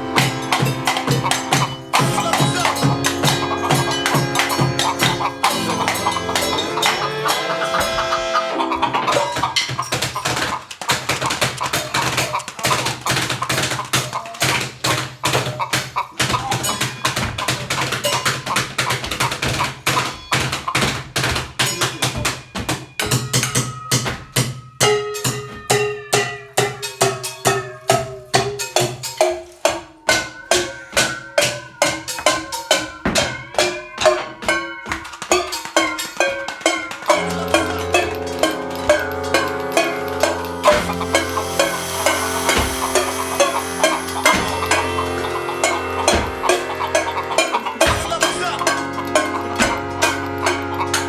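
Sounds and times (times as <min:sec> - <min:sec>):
held chords and bass: 0:00.0 - 0:08.5, 0:37.1 - 0:51.0
sharp percussion hits: 0:00.0 - 0:20.0, 0:24.8 - 0:51.0
pitched percussion notes: 0:00.0 - 0:22.4, 0:23.0 - 0:51.0.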